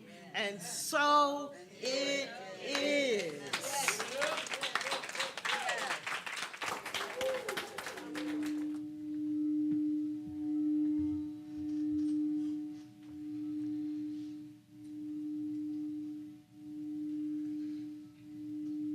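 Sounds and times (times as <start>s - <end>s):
singing bowl ringing: 8.7s - 18.9s.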